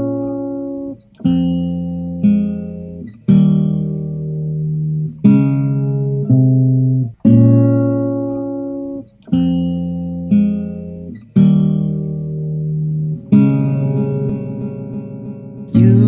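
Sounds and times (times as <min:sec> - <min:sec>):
acoustic guitar chords ringing: 0:00.0 - 0:16.0.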